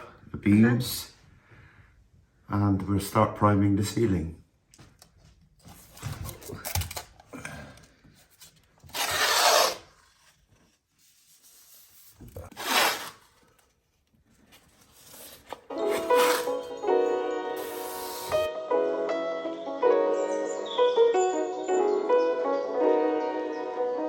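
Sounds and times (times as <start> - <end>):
rustling and handling noises: 4.7 - 16.8
masking tape ripping off roll: 8.8 - 10.2, 11.4 - 13.6, 15.0 - 16.8, 17.6 - 18.5.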